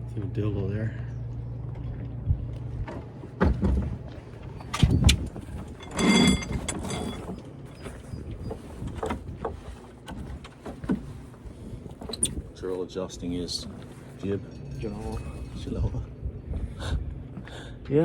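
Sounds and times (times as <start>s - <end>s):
creaking squeal: 4.4s - 8.9s, 12.0s - 12.5s.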